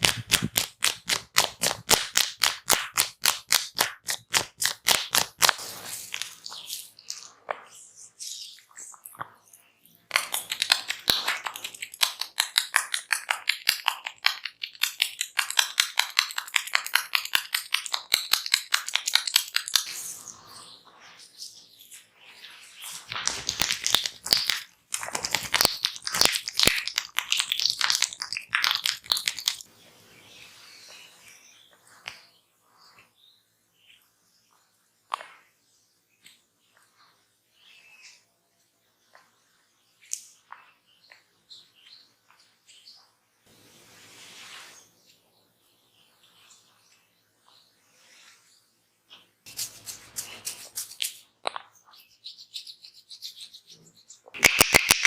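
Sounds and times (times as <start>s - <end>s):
faint hiss: 5.5s - 7.0s, 43.4s - 45.4s
fingers rubbing over head: 49.5s - 51.2s.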